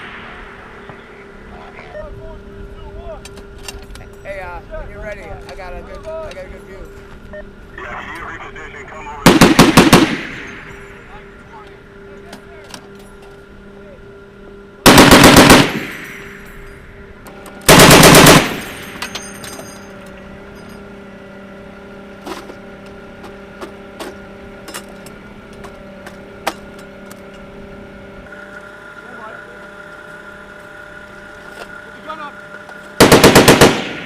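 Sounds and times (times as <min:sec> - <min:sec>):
distant gunshots: 0:09.2 - 0:10.8, 0:14.9 - 0:16.2, 0:17.7 - 0:18.9, 0:33.0 - 0:34.0
machine gun bursts: 0:09.2 - 0:10.8, 0:14.8 - 0:16.4, 0:17.7 - 0:19.4, 0:33.0 - 0:34.0.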